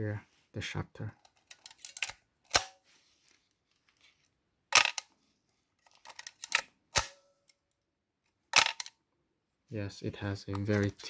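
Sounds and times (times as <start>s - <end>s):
camera shutter and mirror clack: 4.8s - 5.1s.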